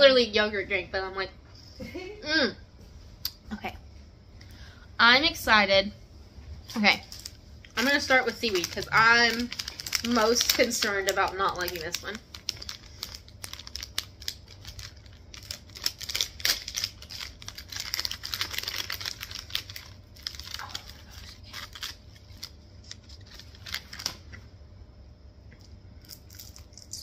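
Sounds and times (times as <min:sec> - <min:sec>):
snack packet crinkling: 0:06.8 - 0:24.4, 0:26.0 - 0:27.0
seaweed snack crackling: 0:07.0 - 0:24.2, 0:26.0 - 0:27.0.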